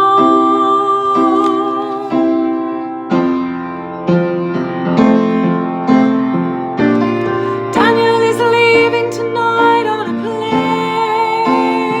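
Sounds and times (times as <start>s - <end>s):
soprano singing with vibrato: 0.0s - 2.3s, 7.6s - 12.0s
piano chords: 0.0s - 12.0s.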